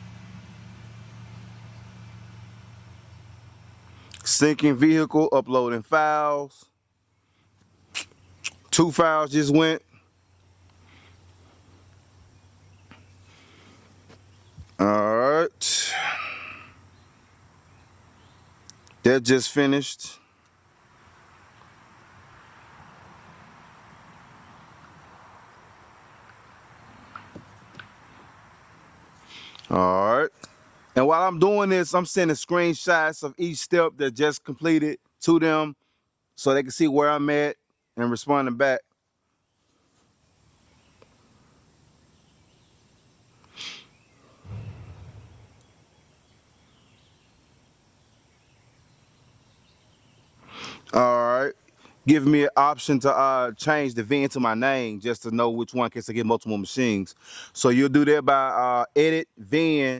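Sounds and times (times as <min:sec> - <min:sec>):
faint hiss: 0:05.9 - 0:31.0, 0:39.4 - 0:55.0, 0:56.5 - 0:57.8.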